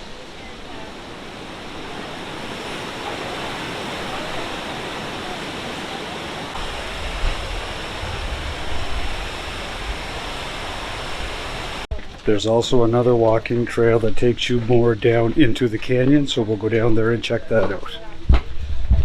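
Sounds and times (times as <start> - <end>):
waterfall roaring: 0.0 - 11.9.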